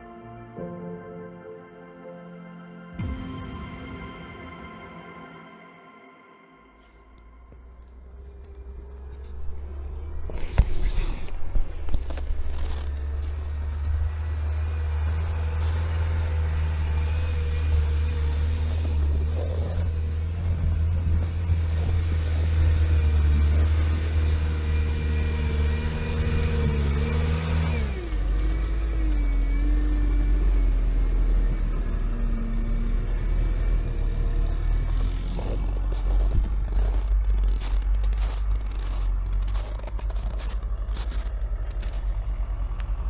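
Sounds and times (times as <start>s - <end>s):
diesel engine running: 6.8s - 43.0s.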